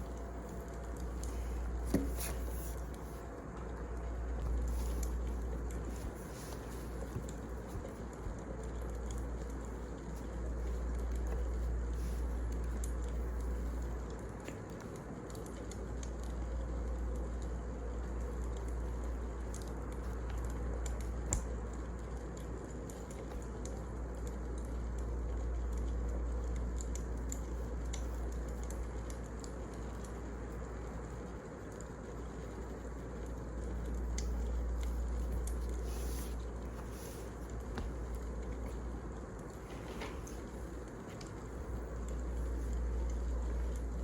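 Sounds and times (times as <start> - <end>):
wood fire crackling: 0.0 - 44.0.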